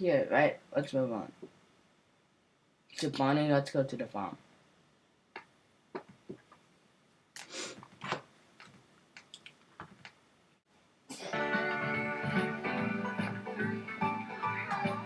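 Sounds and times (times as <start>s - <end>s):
end credits music through tv speaker: 11.3s - 15.0s.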